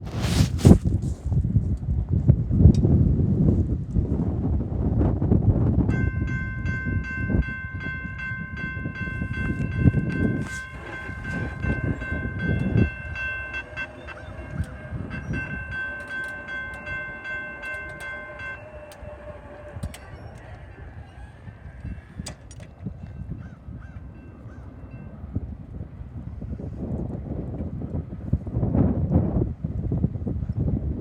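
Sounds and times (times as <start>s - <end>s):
low train rumble: 0.0s - 31.0s
locomotive air horn blasts: 9.0s - 22.3s.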